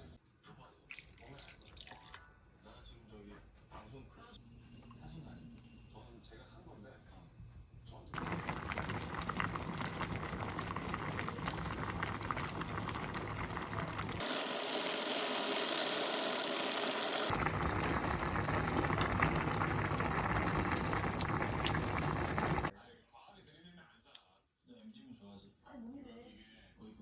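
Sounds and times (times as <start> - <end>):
stew boiling and bubbling: 8.2 - 22.7.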